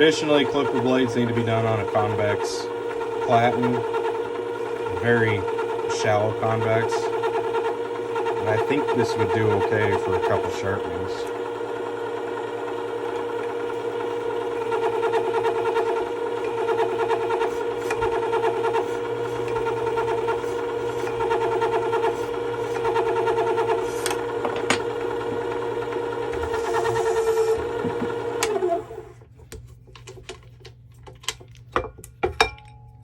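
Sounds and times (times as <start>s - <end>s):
blade scraping on abrasive: 0.0s - 29.0s
sharpener motor running: 0.0s - 29.2s.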